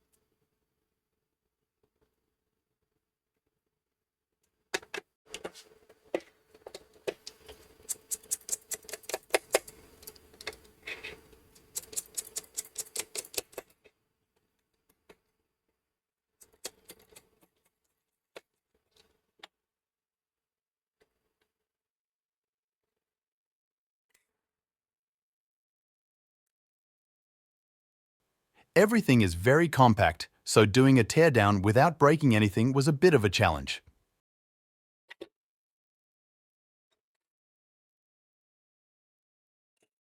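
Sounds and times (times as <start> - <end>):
plastic and metal parts clicking: 7.1 - 13.7.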